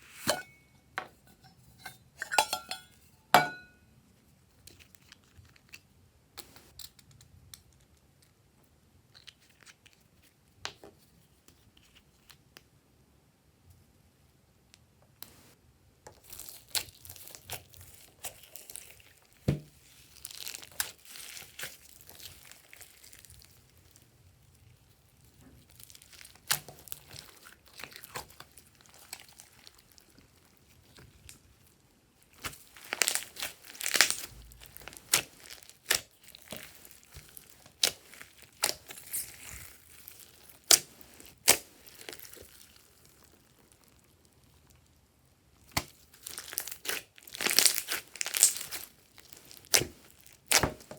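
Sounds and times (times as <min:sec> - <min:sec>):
slime crackling and popping: 0:16.2 - 0:50.9.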